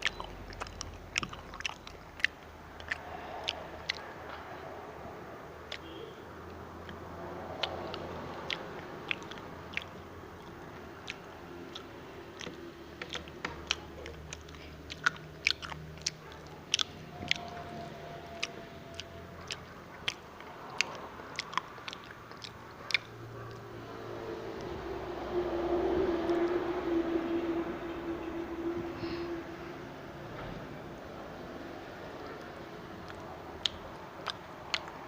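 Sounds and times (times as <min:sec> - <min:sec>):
chewing crispy food crunches: 0:00.0 - 0:04.5, 0:07.6 - 0:23.6, 0:33.1 - 0:35.0.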